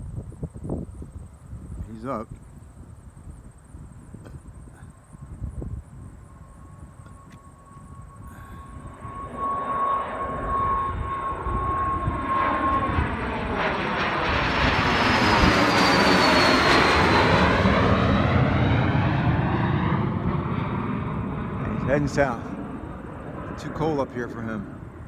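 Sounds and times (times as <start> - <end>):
jet engines at takeoff power: 0.0 - 25.0
high engine whine: 4.5 - 25.0.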